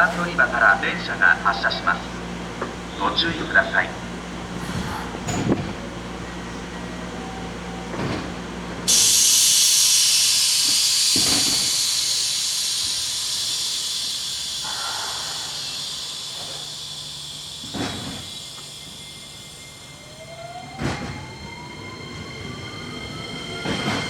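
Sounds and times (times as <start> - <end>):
compressed air hissing from train: 0.0 - 6.3, 8.8 - 21.0.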